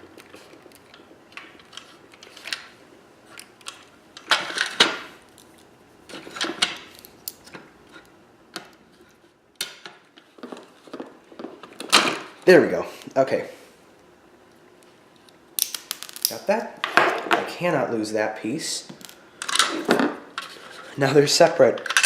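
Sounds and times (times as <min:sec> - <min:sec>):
metal parts clicking and scraping: 0:21.8 - 0:22.0.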